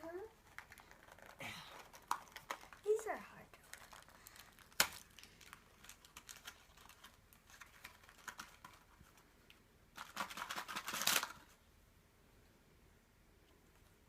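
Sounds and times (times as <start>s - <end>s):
plastic packaging crinkling: 0.0s - 9.2s, 9.9s - 11.6s
plastic tearing: 0.1s - 9.2s, 9.9s - 11.6s.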